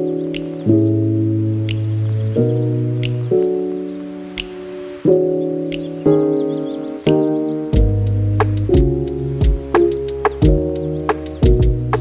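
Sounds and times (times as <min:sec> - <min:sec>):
sustained music chords: 0:00.0 - 0:12.0
light tick: 0:00.2 - 0:00.7, 0:01.6 - 0:03.6.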